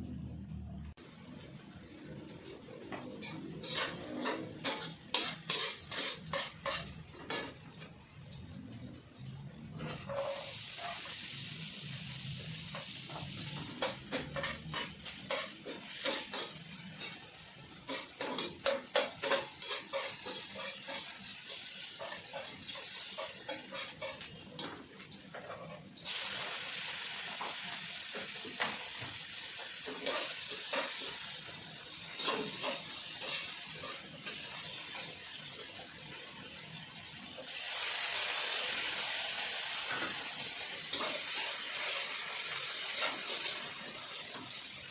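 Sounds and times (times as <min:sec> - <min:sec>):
food sizzling in hot oil: 0:01.0 - 0:44.9
spatula scraping a pan: 0:03.0 - 0:07.6, 0:09.8 - 0:11.3, 0:12.7 - 0:17.2, 0:17.8 - 0:26.3, 0:29.6 - 0:31.3, 0:32.0 - 0:35.1, 0:40.0 - 0:44.3.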